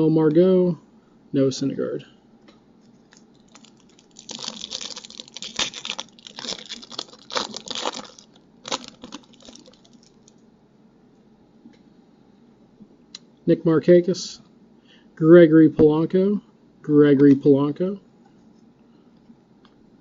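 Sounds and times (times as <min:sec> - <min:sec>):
foil wrapper tearing and crinkling: 0:03.0 - 0:10.4.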